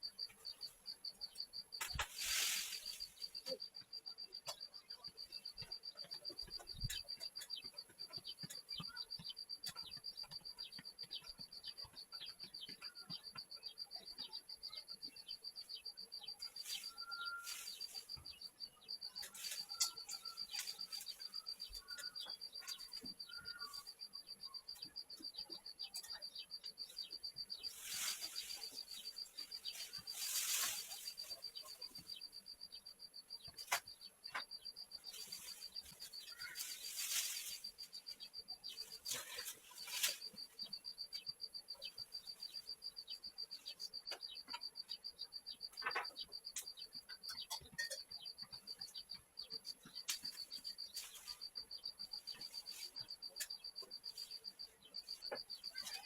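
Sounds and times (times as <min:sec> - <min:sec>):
rapid high chirping: 0:00.0 - 0:56.0
rustling: 0:01.8 - 0:03.5, 0:27.7 - 0:32.1, 0:35.1 - 0:38.1, 0:38.7 - 0:40.6.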